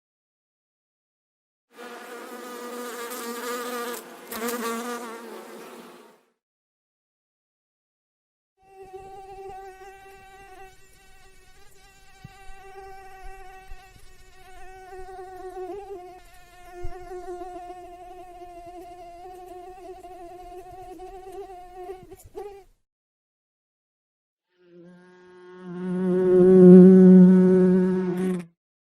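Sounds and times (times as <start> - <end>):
mosquito buzzing: 1.7 - 6.4, 8.6 - 22.8, 24.4 - 28.6.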